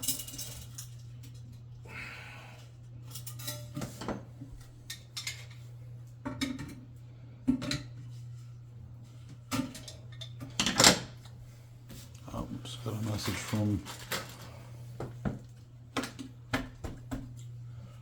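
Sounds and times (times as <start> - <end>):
plumbing parts and tools clinking: 0.0 - 1.4, 12.8 - 14.6
steady low hum: 0.0 - 18.0.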